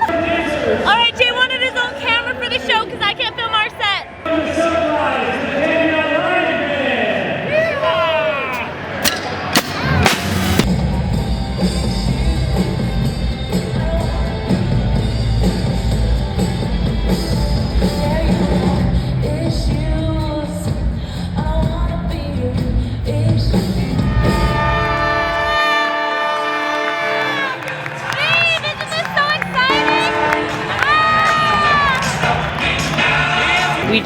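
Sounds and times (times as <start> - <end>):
drum kit: 9.0 - 24.8
bass guitar: 9.8 - 24.8.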